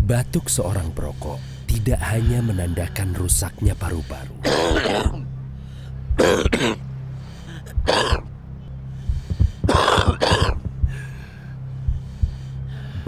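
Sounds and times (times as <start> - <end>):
low steady hum: 0.0 - 13.0
person coughing hard: 4.4 - 5.2, 6.2 - 6.8, 7.8 - 8.2, 9.7 - 10.7.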